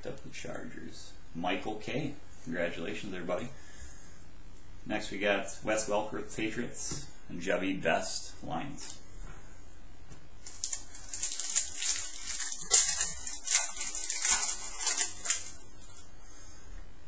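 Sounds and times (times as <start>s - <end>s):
foil wrapper crinkling and tearing: 10.4s - 16.0s.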